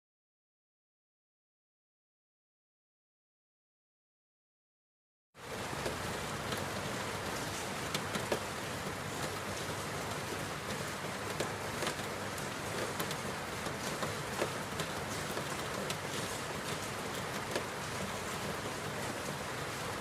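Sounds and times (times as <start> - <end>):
steady rain hiss: 5.4 - 20.0.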